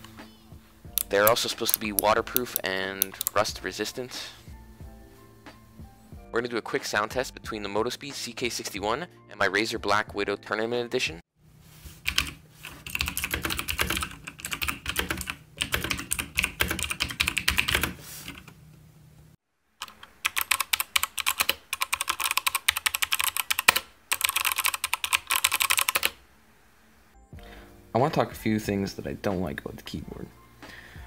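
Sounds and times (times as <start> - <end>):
mechanical keyboard typing: 1.0 - 3.5, 12.1 - 18.5, 19.8 - 26.2.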